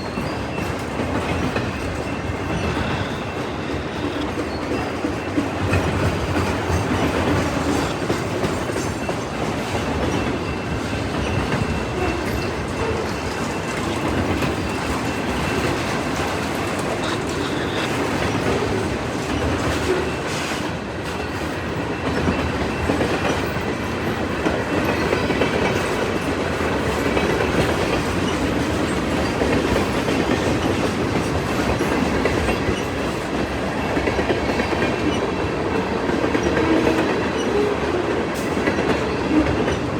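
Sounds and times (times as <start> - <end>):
train wheels clattering over rail joints: 0.0 - 39.9.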